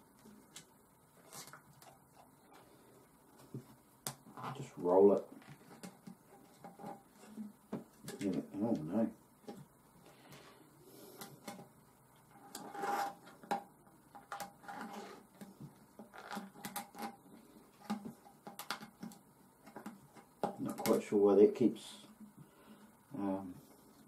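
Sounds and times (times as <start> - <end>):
tumbler parts clicking and knocking: 11.2 - 21.1.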